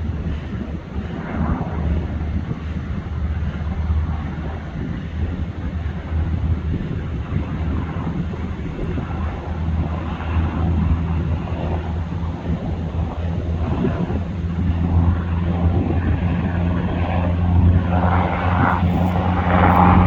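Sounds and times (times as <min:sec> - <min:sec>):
helicopter engine and rotor drone: 0:00.0 - 0:20.0
wind buffeting microphone: 0:00.0 - 0:20.0.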